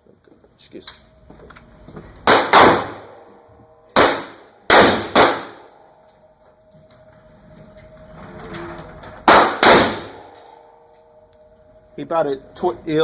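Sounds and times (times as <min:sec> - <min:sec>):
echoing gunshots: 0:02.2 - 0:03.2, 0:04.0 - 0:05.9, 0:09.2 - 0:10.9.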